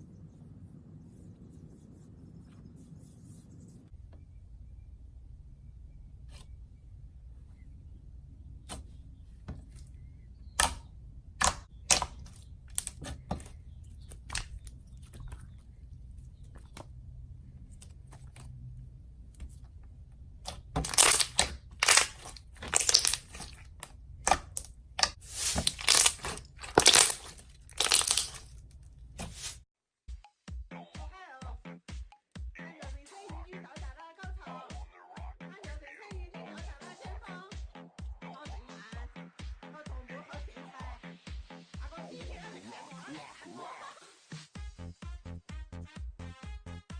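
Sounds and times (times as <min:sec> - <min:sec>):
slime squishing with clicks and pops: 0:09.5 - 0:17.0, 0:19.4 - 0:29.5.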